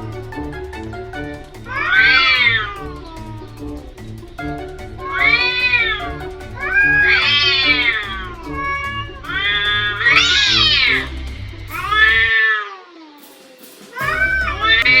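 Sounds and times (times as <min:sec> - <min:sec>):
background music: 0:00.0 - 0:12.4, 0:13.6 - 0:15.0
cats yowling: 0:01.6 - 0:03.6, 0:05.0 - 0:11.1, 0:14.0 - 0:15.0.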